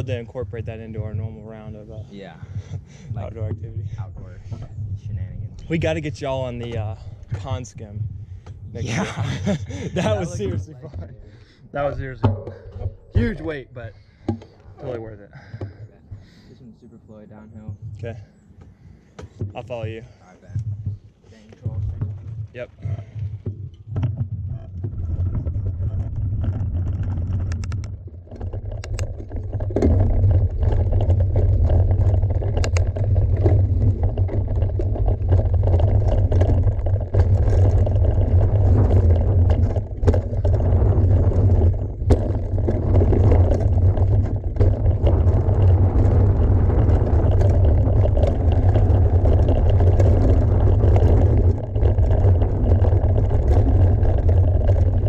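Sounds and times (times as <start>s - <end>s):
bike tyres rolling on dirt: 0.0s - 55.0s
wind noise on microphone: 0.0s - 55.0s
bike clicks and rattles: 17.6s - 55.0s.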